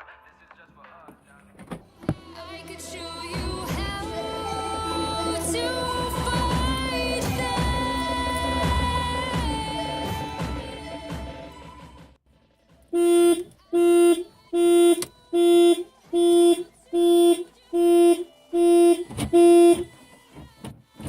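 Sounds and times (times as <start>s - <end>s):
car warning chime beeping: 13.0s - 19.9s.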